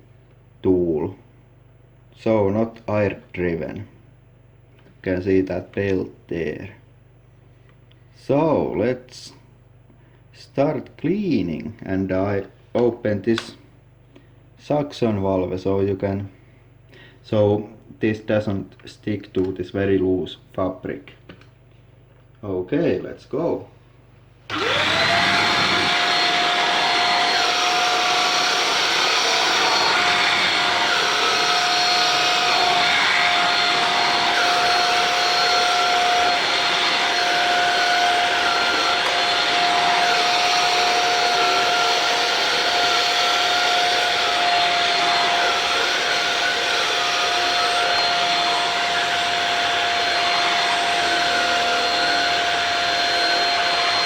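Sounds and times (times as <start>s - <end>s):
stick vacuum motor whining: 24.5s - 54.0s.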